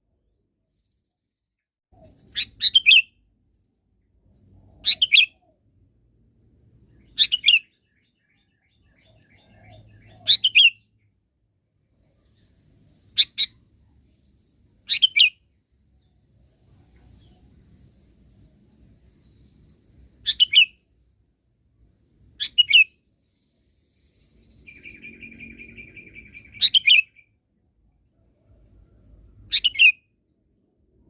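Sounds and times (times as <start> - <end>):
bulbul calling: 9.0 - 10.8.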